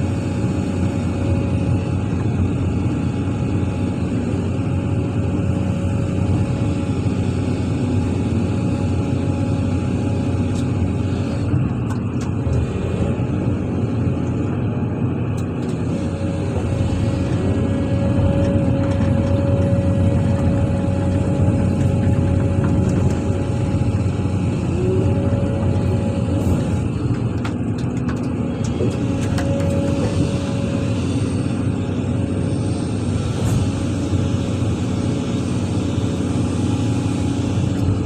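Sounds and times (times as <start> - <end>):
excavator diesel engine under load: 0.0 - 38.0
steady whine: 0.0 - 38.0.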